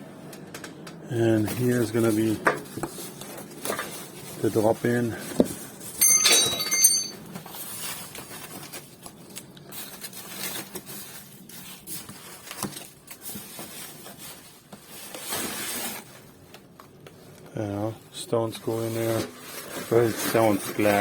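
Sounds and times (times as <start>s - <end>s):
handling noise: 5.5s - 8.7s
glass stones clinking in metal pan: 6.0s - 7.2s
high ringing: 6.0s - 7.2s.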